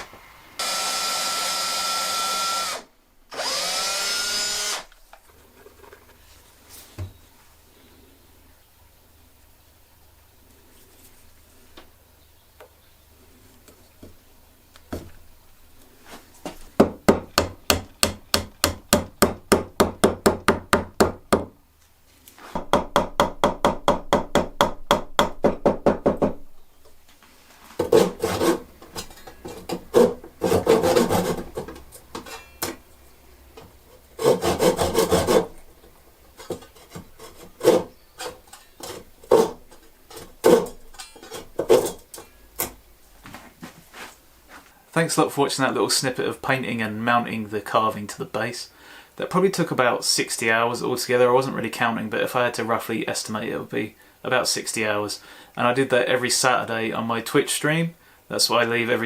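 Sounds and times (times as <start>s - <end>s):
knocks on wood: 22.6s - 26.4s
hand tool rasping wood: 27.8s - 31.9s, 33.9s - 35.7s, 36.4s - 41.8s.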